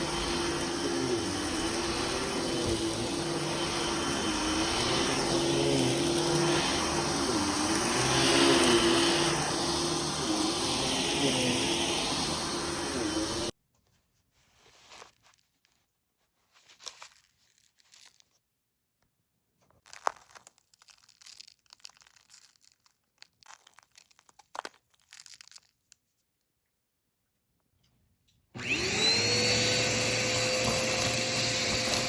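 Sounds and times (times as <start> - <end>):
vacuum cleaner running: 0.0 - 13.5, 28.6 - 32.0
crinkling and rustling: 13.6 - 26.8.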